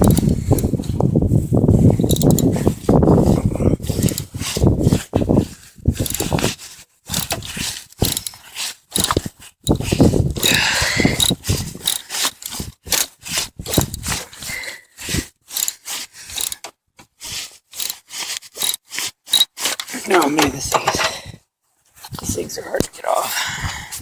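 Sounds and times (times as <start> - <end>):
hand tools clicking and scraping on metal: 0.0 - 21.4.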